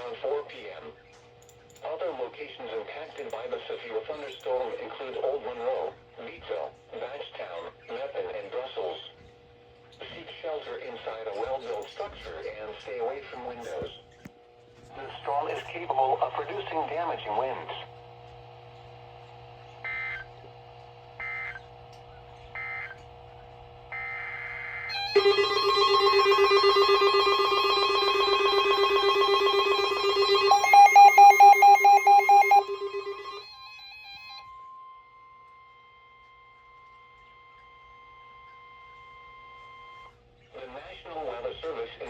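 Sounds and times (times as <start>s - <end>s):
screechy digital data bursts: 24.9s - 33.8s
rapid beeping: 24.9s - 34.4s
warbling alert tone: 24.9s - 34.4s
faint steady tone: 24.9s - 35.8s.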